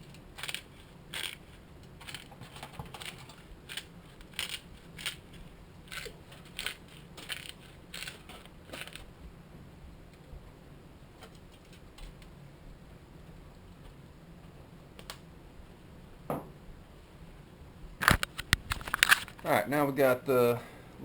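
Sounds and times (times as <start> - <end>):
pepper mill grinding: 0.0 - 9.1, 18.0 - 19.4.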